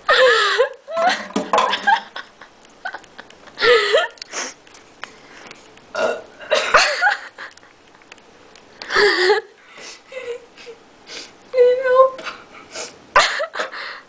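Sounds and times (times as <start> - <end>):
woman burping loudly: 5.9 - 6.9.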